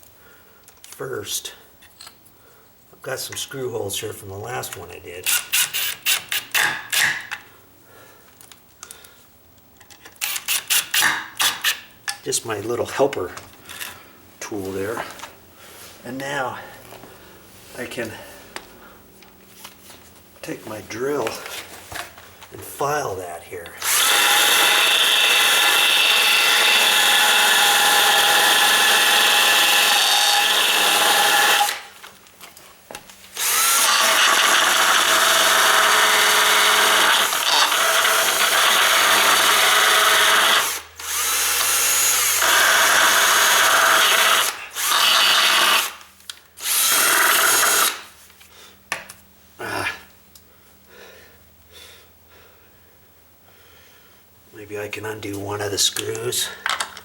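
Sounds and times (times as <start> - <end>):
electric drill running: 23.8 - 32.0, 33.4 - 48.1.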